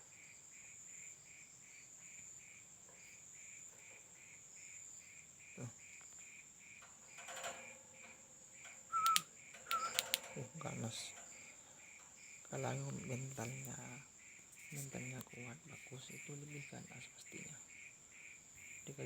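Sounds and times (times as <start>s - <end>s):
soft insect chirp: 0.0s - 19.0s
insect trilling: 2.5s - 19.0s.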